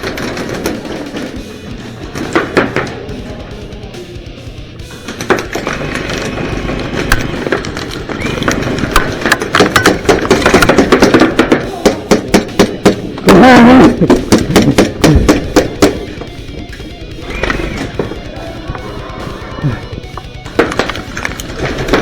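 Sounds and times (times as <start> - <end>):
airsoft guns firing: 0.0 - 22.0
person shouting: 13.3 - 14.0.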